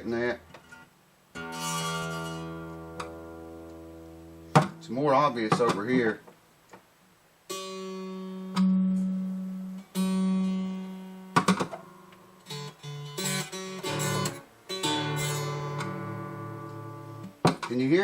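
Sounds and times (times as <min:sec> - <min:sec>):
acoustic guitar notes plucked: 0:00.0 - 0:06.4, 0:07.5 - 0:18.0.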